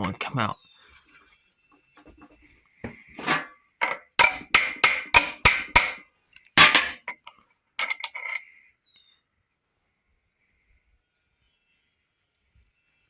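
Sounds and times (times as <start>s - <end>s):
metal tapping on engine parts: 2.0s - 8.4s
metal clattering: 2.9s - 8.4s.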